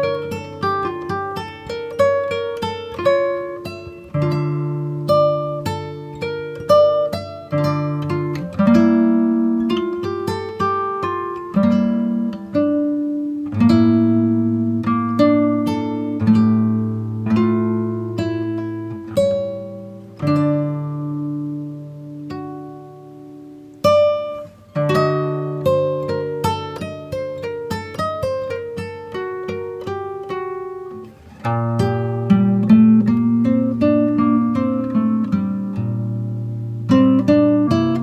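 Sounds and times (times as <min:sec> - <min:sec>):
acoustic guitar music: 0:00.0 - 0:38.0.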